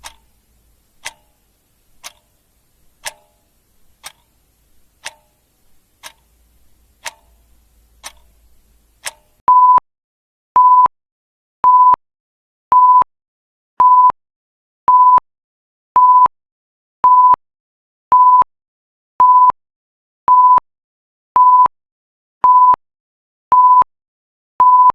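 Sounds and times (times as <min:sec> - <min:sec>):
electronic timer beeps: 0:09.0 - 0:09.8, 0:20.3 - 0:20.6, 0:21.4 - 0:21.7, 0:22.5 - 0:22.8, 0:23.6 - 0:23.9, 0:24.6 - 0:24.9.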